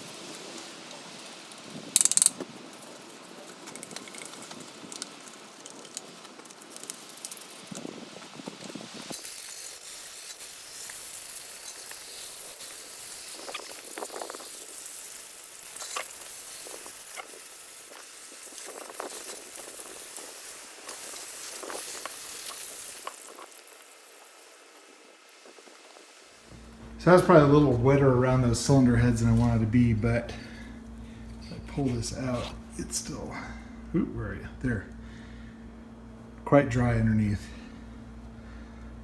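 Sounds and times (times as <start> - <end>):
water spraying onto engine: 0.0 - 26.4.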